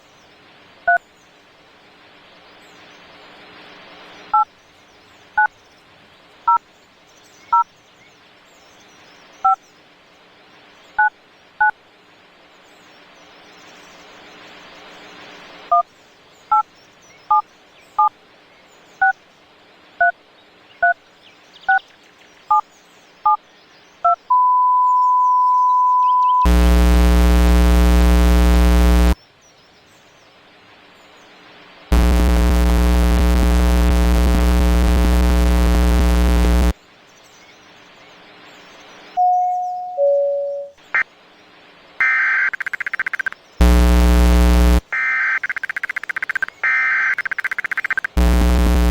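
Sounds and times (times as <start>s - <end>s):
hiss and low hum: 0.0s - 24.0s, 26.5s - 46.8s, 47.4s - 48.9s
steady single-pitch beep: 24.3s - 26.5s, 39.2s - 40.8s
touch-tone keypad beeps: 24.3s - 26.5s, 39.2s - 40.8s
loud harsh buzz: 26.5s - 29.2s, 31.9s - 36.7s, 43.6s - 44.9s, 48.2s - 48.9s.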